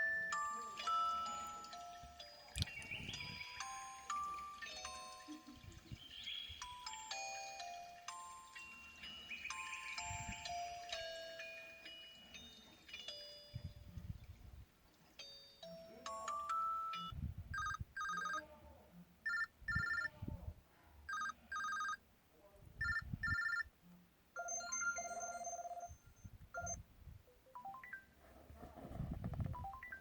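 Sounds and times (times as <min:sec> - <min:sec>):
warbling ringtone tone: 0:00.0 - 0:13.7, 0:16.1 - 0:18.4, 0:19.3 - 0:20.1, 0:21.1 - 0:22.0, 0:22.8 - 0:23.6, 0:24.4 - 0:26.8.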